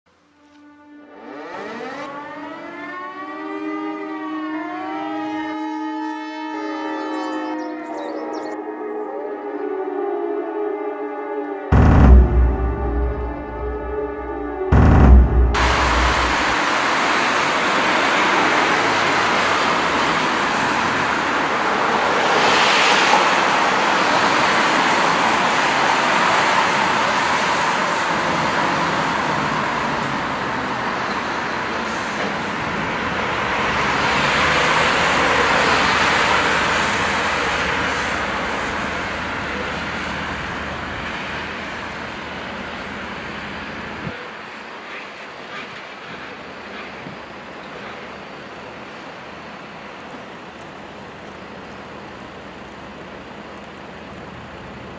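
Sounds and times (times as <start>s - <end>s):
passing vehicles rushing: 11.7s - 42.3s.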